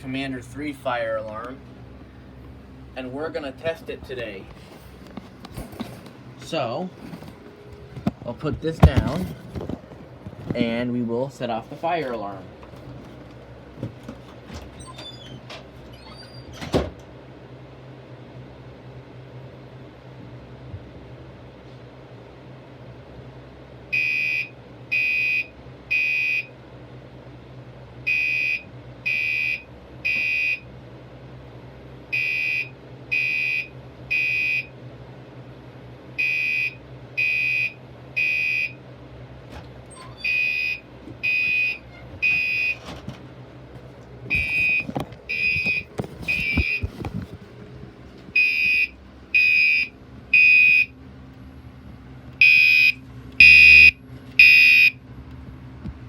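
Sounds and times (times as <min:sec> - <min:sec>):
fire alarm blasts: 0:23.9 - 0:26.5, 0:28.1 - 0:30.6, 0:32.1 - 0:34.7, 0:36.2 - 0:38.8, 0:40.2 - 0:42.8, 0:48.4 - 0:50.9, 0:52.4 - 0:55.0.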